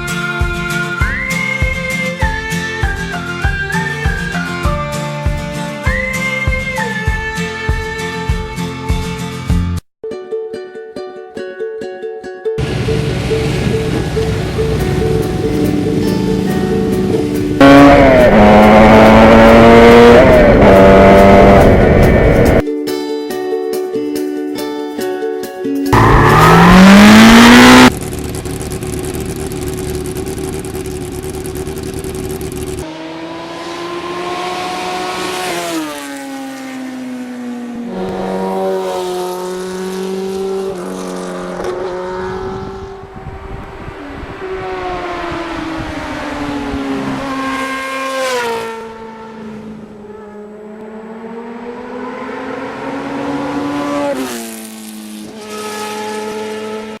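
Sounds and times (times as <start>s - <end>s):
motorcycle engine accelerating: 12.6s - 22.6s, 25.9s - 57.0s
wind noise: 42.2s - 47.3s.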